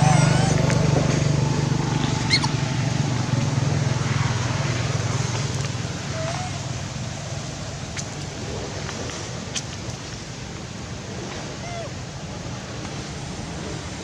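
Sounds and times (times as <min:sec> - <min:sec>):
motor humming: 0:00.0 - 0:03.6.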